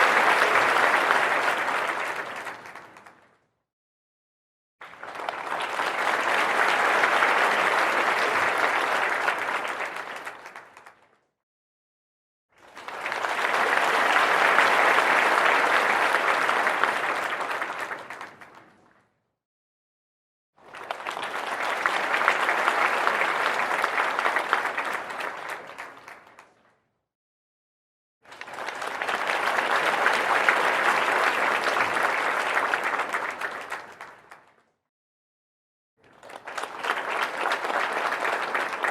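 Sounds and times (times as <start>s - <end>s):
crowd applause: 0.0s - 3.2s, 4.8s - 11.0s, 12.6s - 18.8s, 20.6s - 26.6s, 28.3s - 34.5s, 36.1s - 38.9s.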